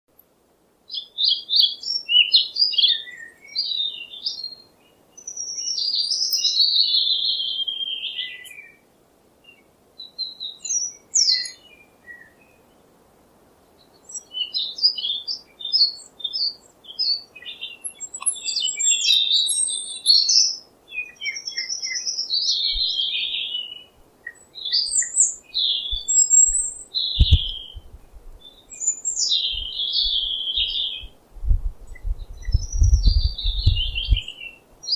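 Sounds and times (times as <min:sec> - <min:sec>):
low thumps: 0:27.2 - 0:28.4, 0:31.4 - 0:34.3.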